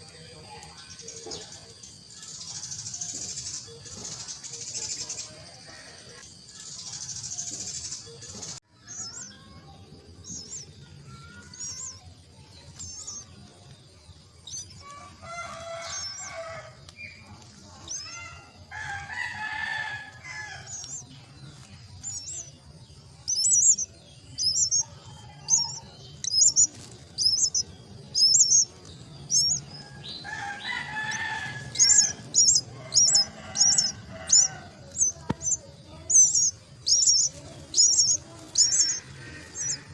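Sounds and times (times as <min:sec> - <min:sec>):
nestlings begging calls: 0:00.0 - 0:39.9
lower harsh bird calls: 0:14.2 - 0:21.1, 0:23.2 - 0:39.9.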